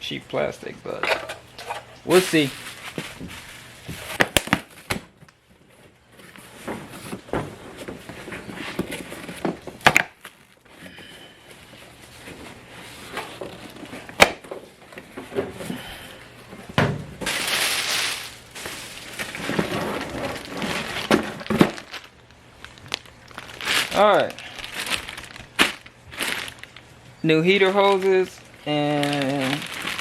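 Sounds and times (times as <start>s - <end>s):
packaging rustling: 1.4s - 30.0s
knocks and clicks of packaging: 2.9s - 11.7s, 13.1s - 15.8s, 16.5s - 17.6s, 18.6s - 22.1s, 24.6s - 26.7s.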